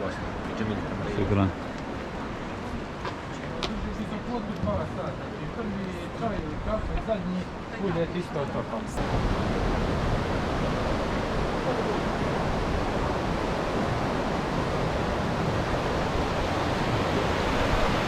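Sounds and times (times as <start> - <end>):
fast-flowing river water: 7.4 - 18.0.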